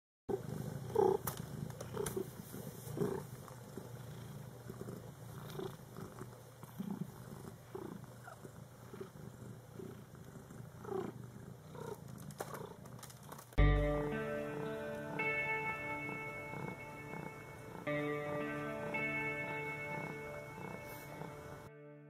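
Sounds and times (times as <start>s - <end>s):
cat purring: 0.3s - 13.6s, 14.4s - 21.7s
short higher sounds: 13.6s - 22.0s.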